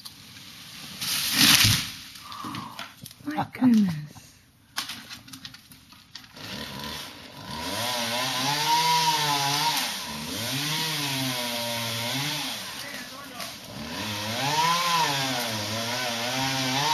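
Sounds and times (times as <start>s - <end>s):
chainsaw revving: 6.3s - 16.9s.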